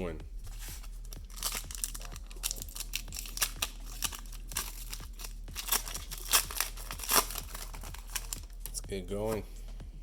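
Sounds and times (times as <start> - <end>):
foil wrapper crinkling and tearing: 1.1 - 8.8.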